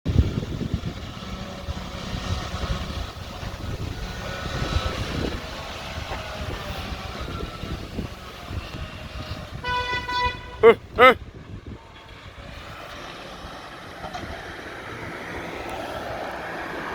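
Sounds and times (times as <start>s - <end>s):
heavy vehicle engine rumble: 0.1s - 16.9s
vehicle horn: 9.5s - 10.8s.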